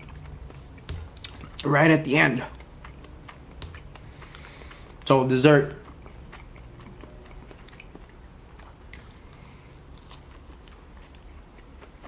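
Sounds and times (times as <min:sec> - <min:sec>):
wet mouth clicks: 0:00.0 - 0:01.7
biting and chewing food: 0:00.0 - 0:12.0.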